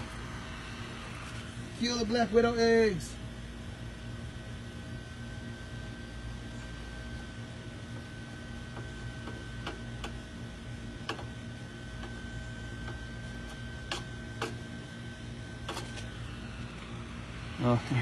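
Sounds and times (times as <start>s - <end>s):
high-pitched whine: 0.0s - 3.3s, 11.6s - 18.0s
low hum: 0.0s - 18.0s.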